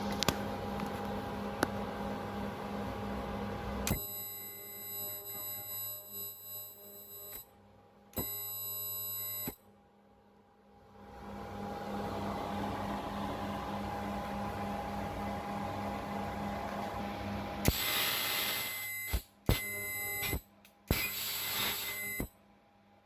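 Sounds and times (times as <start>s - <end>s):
steady hum with whine: 0.0s - 23.0s
buzzing electronic tone: 3.8s - 7.5s, 8.2s - 9.6s, 17.6s - 22.3s.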